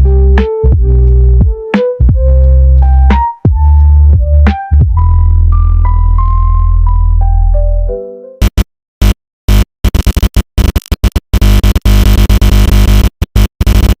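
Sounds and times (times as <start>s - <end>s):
synth notes over heavy bass: 0.0s - 8.2s
choppy stuttering electronic bursts: 8.4s - 14.0s.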